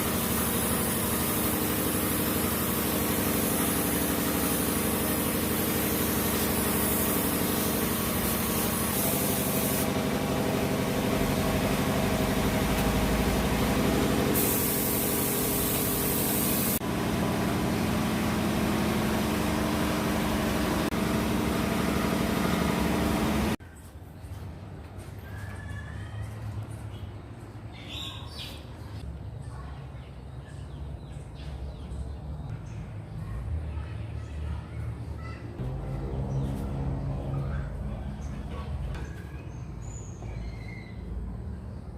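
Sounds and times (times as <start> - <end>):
hiss: 0.0 - 9.9, 14.3 - 16.8
truck engine idling: 0.0 - 23.6.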